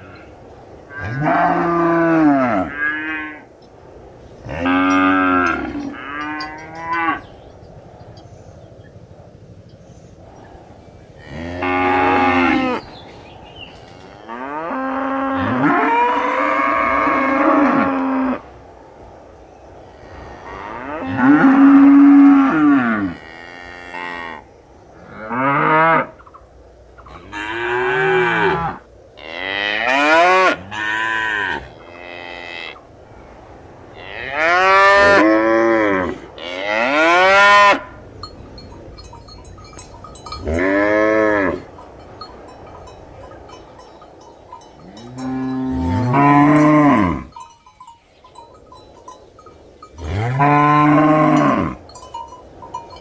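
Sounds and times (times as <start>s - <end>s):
cows mooing: 0.9s - 3.5s, 4.5s - 7.4s, 10.4s - 18.4s, 20.0s - 24.4s, 25.0s - 26.4s, 27.0s - 32.8s, 33.9s - 38.0s, 39.8s - 41.8s, 43.4s - 47.6s, 49.8s - 52.1s.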